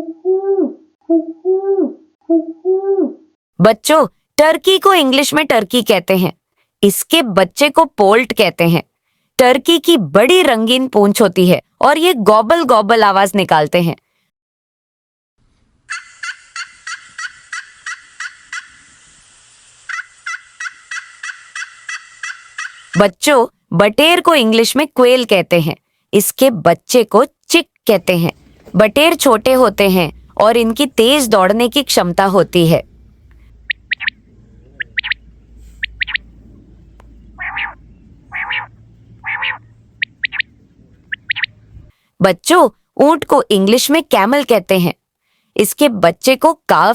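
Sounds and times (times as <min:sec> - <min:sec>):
turkey calling: 0:15.9 - 0:19.0, 0:19.9 - 0:23.0, 0:33.4 - 0:41.9.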